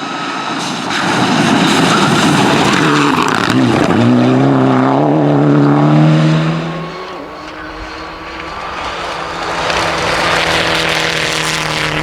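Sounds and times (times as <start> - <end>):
rally car engine at high revs: 0.0 - 12.0
loud rushing noise: 6.0 - 12.0.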